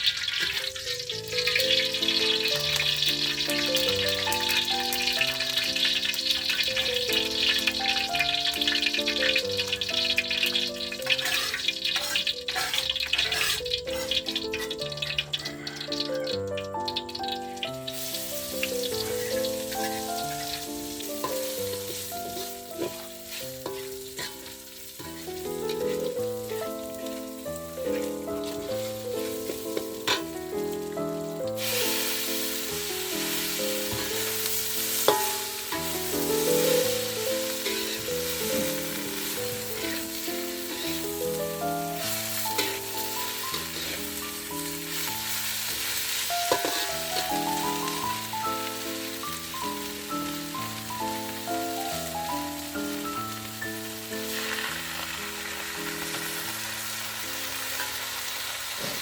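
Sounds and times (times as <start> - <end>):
food sizzling in a pan: 0.0 - 59.0
background music: 0.8 - 57.6.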